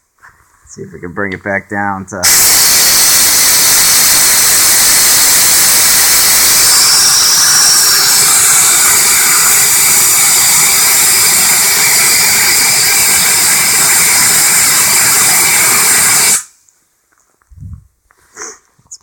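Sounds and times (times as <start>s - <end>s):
compressed air hissing from hose: 2.2s - 16.6s.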